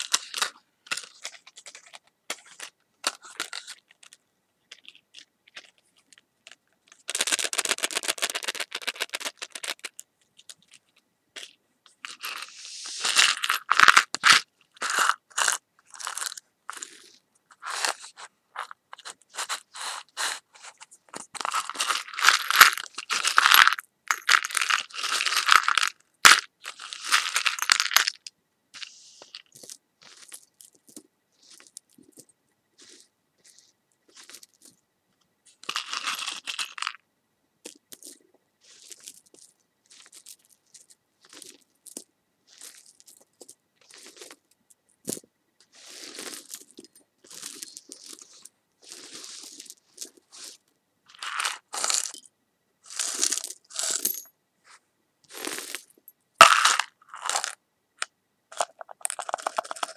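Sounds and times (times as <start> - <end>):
crisp crunching and crackling: 11.4 - 28.2, 32.8 - 34.7, 37.8 - 44.4, 45.8 - 52.2, 52.9 - 54.0, 55.3 - 57.6, 58.5 - 59.9.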